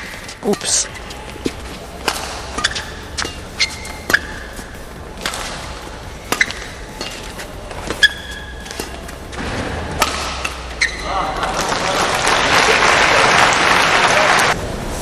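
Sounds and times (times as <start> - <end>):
shoes squeaking on court floor: 0.0 - 11.4
rackets hitting shuttlecock: 0.0 - 11.7.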